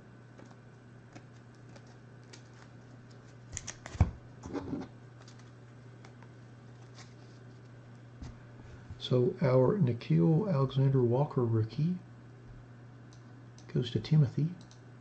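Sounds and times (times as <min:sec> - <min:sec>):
cards clicking and shuffling: 0:00.4 - 0:07.2
card rustle: 0:00.4 - 0:07.8.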